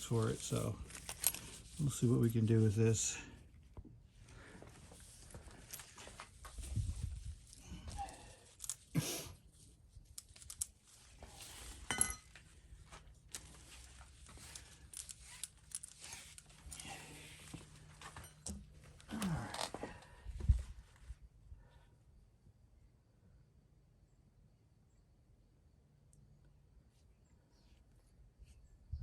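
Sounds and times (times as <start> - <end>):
rustling: 0.0 - 21.0.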